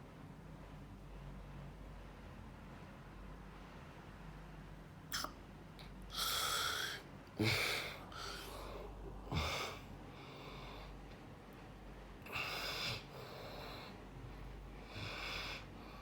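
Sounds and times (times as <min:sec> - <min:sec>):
person snoring: 0:06.1 - 0:08.7.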